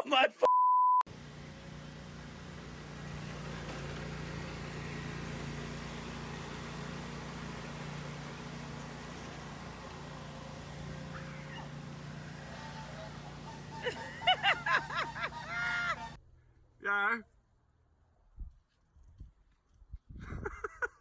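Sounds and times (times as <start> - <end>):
low mechanical hum: 1.1 - 16.8.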